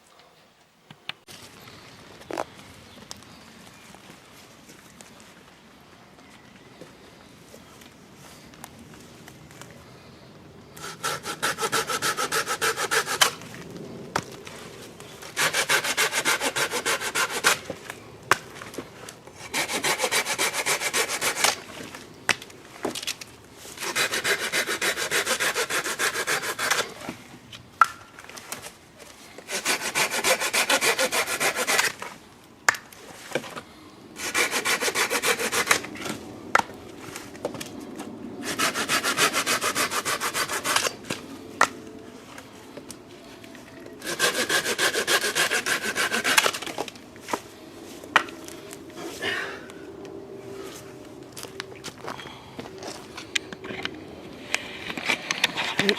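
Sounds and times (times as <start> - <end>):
handsaw sawing through wood: 10.8 - 13.4, 15.3 - 17.7, 19.4 - 21.7, 23.8 - 27.1, 29.5 - 32.1, 34.2 - 35.9, 38.4 - 41.0, 44.0 - 46.8.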